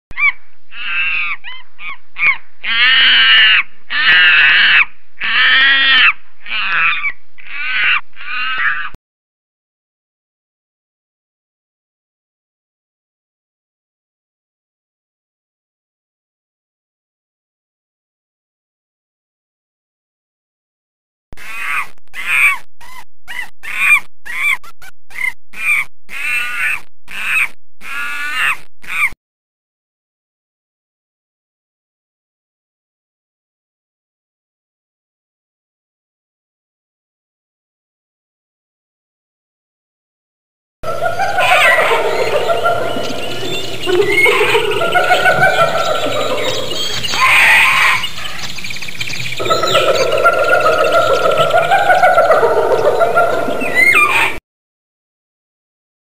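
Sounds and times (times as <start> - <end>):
wavering animal-like cries: 0.2 - 9.0, 21.4 - 29.2, 40.8 - 48.5, 49.4 - 54.4
cartoon character vocalizing: 21.4 - 29.2.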